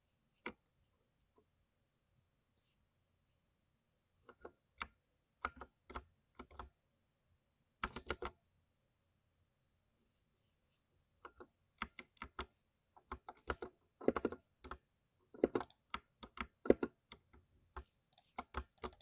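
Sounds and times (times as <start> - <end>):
mechanical keyboard typing: 13.1 - 14.8, 15.4 - 17.2, 17.8 - 19.0.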